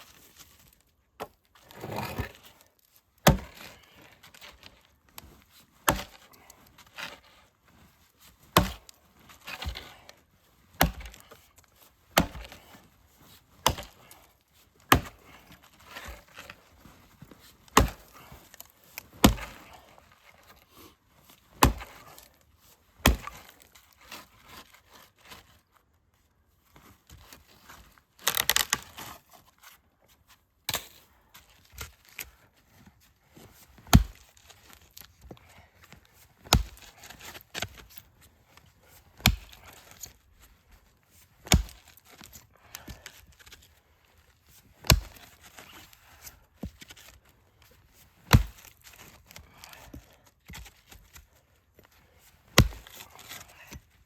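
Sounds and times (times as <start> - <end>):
axe striking wood: 3.2 - 3.7, 5.8 - 6.2, 8.6 - 8.9, 10.8 - 11.3, 12.2 - 12.6, 13.6 - 14.0, 14.9 - 15.2, 17.8 - 18.2, 19.2 - 19.6, 21.6 - 22.0, 23.0 - 23.5, 33.9 - 34.2, 36.4 - 37.7, 39.2 - 39.7, 41.4 - 41.9, 44.8 - 45.3, 48.3 - 48.7, 52.6 - 53.0.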